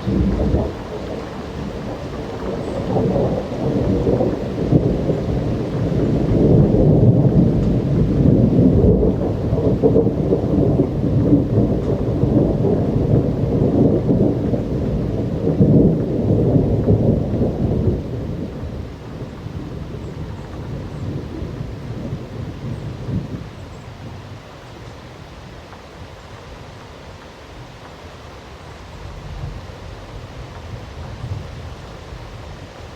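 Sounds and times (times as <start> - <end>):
rolling thunder: 0.0 - 24.4
steady rain: 0.0 - 32.9.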